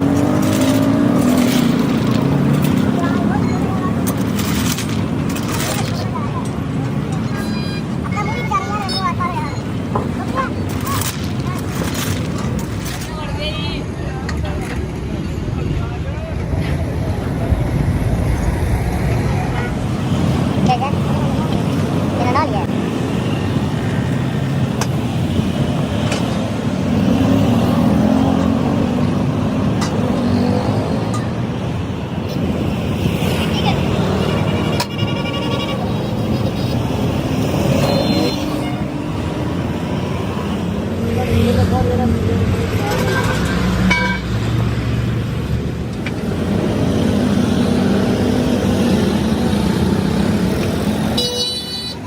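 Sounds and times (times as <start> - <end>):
road noise: 0.0 - 52.0
vehicle engine hum: 0.0 - 52.0
short car horn toot: 51.2 - 52.0.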